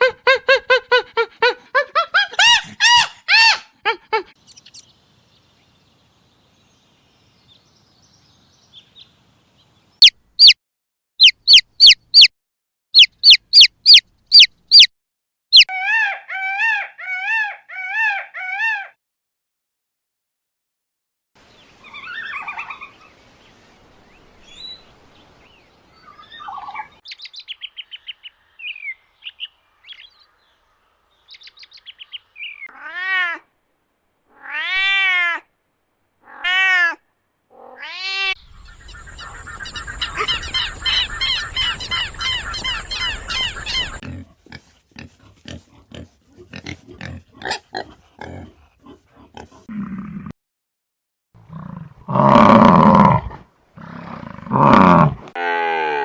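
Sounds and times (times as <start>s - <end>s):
loud animal call: 0.0s - 4.4s, 36.2s - 49.8s
rising and falling animal calls: 0.0s - 4.4s, 11.2s - 12.3s, 13.0s - 14.9s, 15.5s - 19.0s, 21.8s - 23.1s, 36.2s - 50.3s
short animal chirps: 11.2s - 12.3s, 13.0s - 14.9s.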